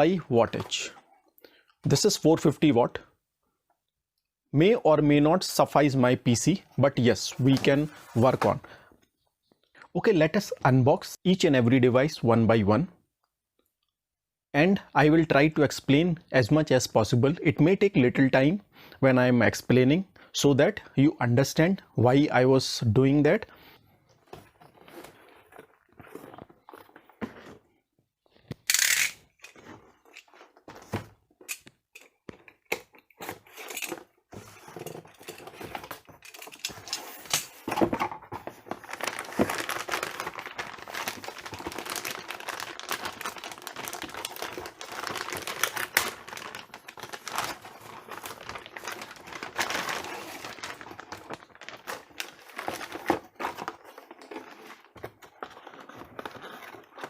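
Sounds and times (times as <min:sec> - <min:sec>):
plastic crinkling and rustling: 0:33.8 - 0:57.0.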